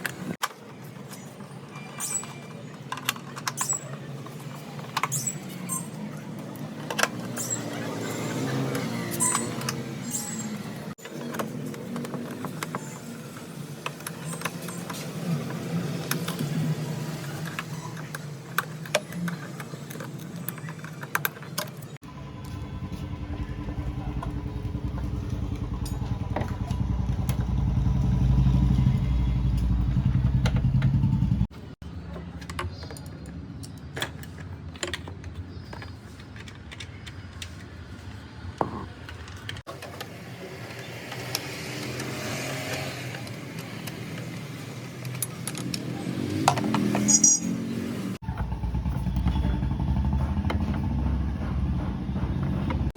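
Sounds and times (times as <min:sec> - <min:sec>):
metal tools clinking: 0:46.6 - 0:47.6.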